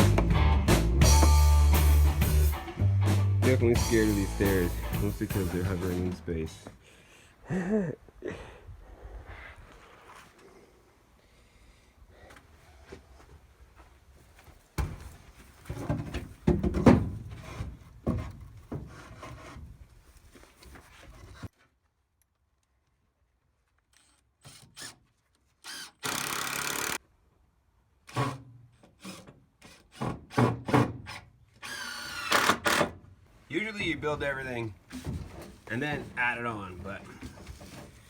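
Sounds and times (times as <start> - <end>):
knocks of lumber: 14.8 - 19.6
power tool running: 25.6 - 27.0, 31.6 - 32.9.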